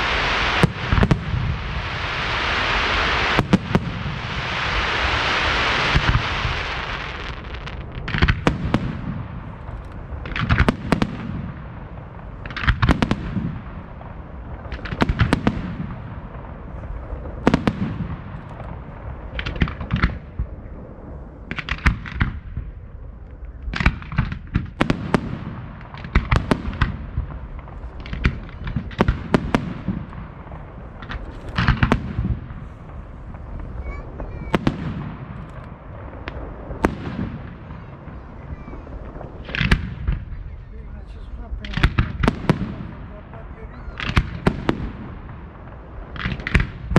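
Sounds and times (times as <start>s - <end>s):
fireworks bangs: 0.0s - 46.9s
low rumbling echo: 0.0s - 46.9s.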